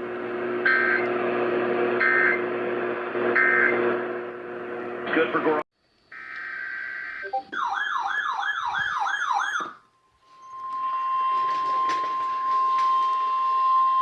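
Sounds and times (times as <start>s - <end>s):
steady single-pitch alarm tone: 0.6s - 1.1s, 2.0s - 2.4s, 6.1s - 14.0s
warbling siren-like alert tone: 6.9s - 14.0s.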